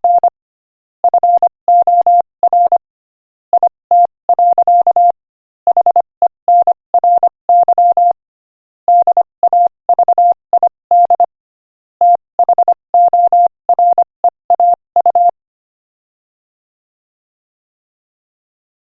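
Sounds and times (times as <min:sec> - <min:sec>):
morse code beeps: 0:00.0 - 0:00.3, 0:01.1 - 0:02.8, 0:03.6 - 0:08.2, 0:08.9 - 0:11.3, 0:12.0 - 0:15.3.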